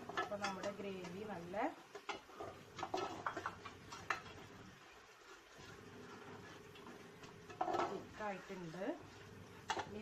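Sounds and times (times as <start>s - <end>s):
spoon scraping against pan: 0.0s - 4.4s, 7.2s - 10.0s
spoon stirring thick gravy: 0.0s - 10.0s.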